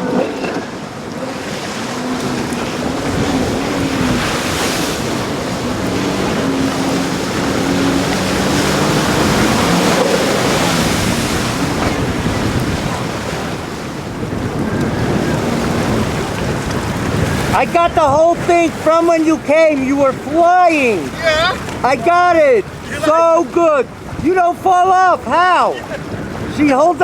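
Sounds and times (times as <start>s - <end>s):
loud surf: 0.0s - 27.0s
personal watercraft engine running: 0.0s - 27.0s
wind noise on microphone: 0.0s - 27.0s.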